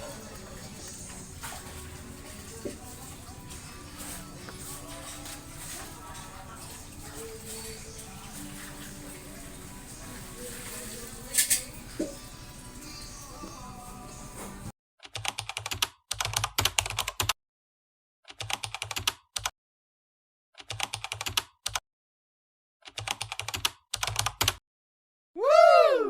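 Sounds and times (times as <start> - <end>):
keyboard typing: 15.1 - 17.3, 18.3 - 19.5, 20.6 - 21.8, 22.8 - 24.6.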